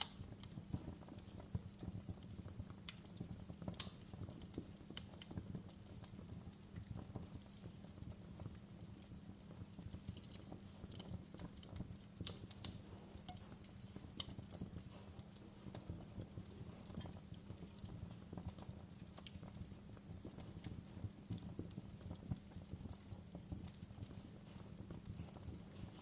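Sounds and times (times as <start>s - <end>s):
fire crackles and pops: 0.0s - 26.0s
low rumble of flames: 0.0s - 26.0s.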